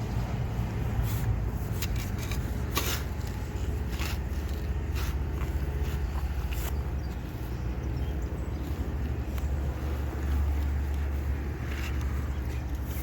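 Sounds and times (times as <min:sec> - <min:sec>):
shovel digging into wet soil: 0:00.8 - 0:06.9, 0:09.3 - 0:13.0.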